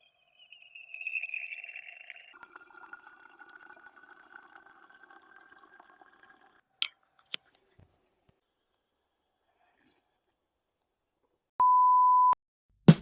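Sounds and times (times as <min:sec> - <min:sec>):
liquid pouring into container: 0:00.0 - 0:07.0.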